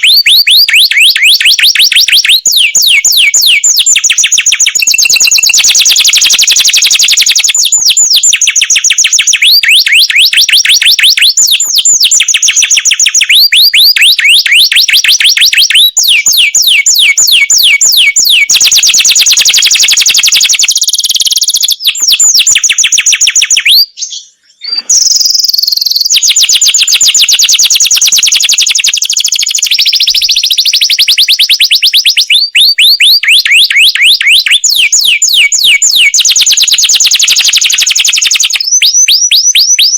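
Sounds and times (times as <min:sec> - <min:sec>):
canary singing rolling trills: 0:00.0 - 0:39.9.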